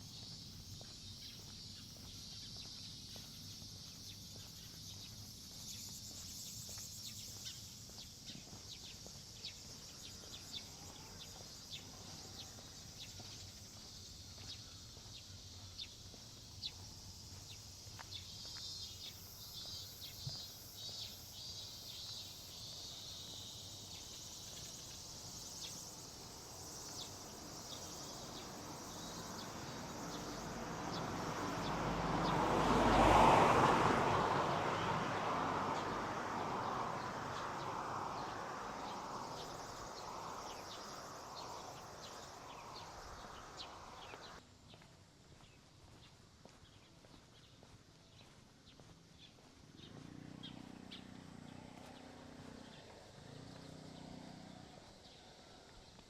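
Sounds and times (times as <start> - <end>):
insects chirring: 0.0 - 44.4
car approaching: 17.2 - 44.4, 48.8 - 56.0.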